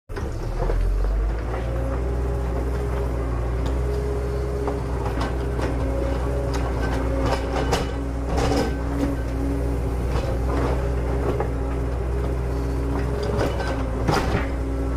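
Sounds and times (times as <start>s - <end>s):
clicks and clatter of moving parts: 4.6s - 9.2s.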